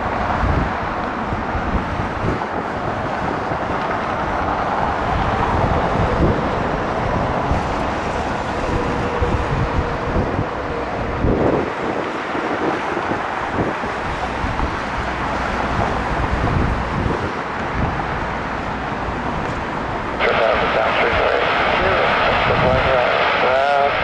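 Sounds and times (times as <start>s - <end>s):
jet engines rumbling: 0.0s - 24.0s
wind buffeting microphone: 0.0s - 24.0s
faint steady whine: 18.4s - 24.0s.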